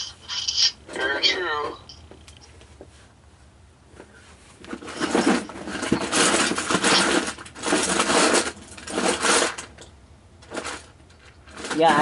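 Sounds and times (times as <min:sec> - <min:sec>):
small objects rattling: 0:04.7 - 0:09.7.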